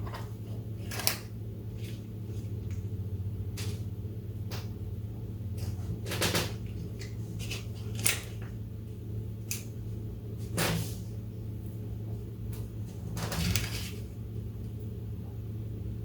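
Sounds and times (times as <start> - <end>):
steady low hum: 0.0 - 16.0.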